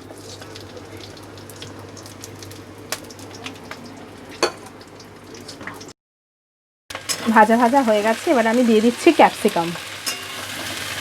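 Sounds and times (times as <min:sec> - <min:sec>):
onions sizzling in hot oil: 0:06.9 - 0:11.0.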